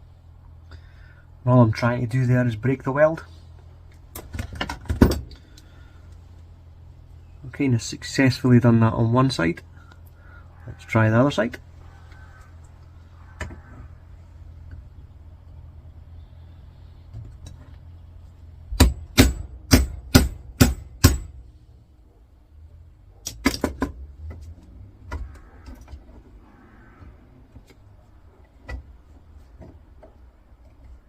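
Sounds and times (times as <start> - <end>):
hammer striking steel: 18.8 - 21.4.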